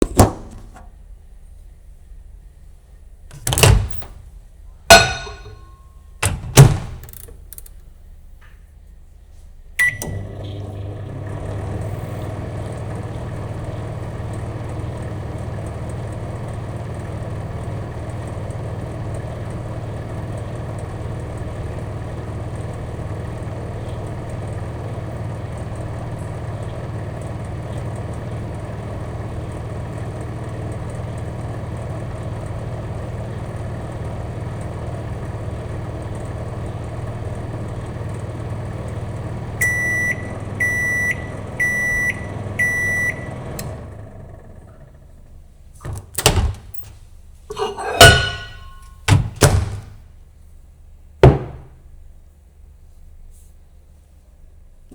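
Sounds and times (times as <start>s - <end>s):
microwave oven humming: 0.0s - 8.5s, 9.6s - 52.8s.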